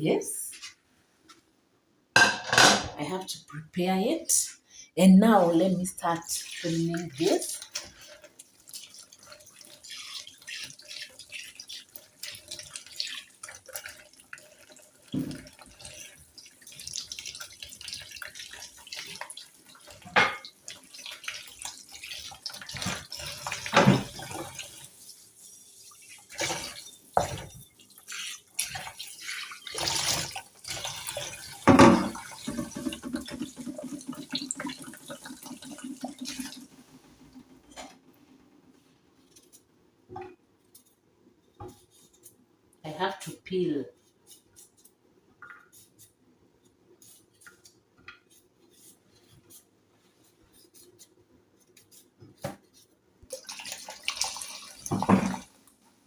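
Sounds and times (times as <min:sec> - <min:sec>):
tap water splashing into sink: 0:08.7 - 0:24.8, 0:26.3 - 0:37.9, 0:53.3 - 0:55.6.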